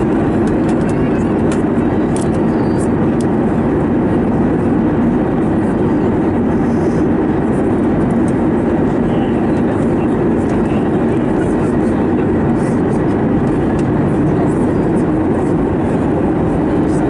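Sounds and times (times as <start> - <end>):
aircraft cabin engine rumble: 0.0 - 17.0.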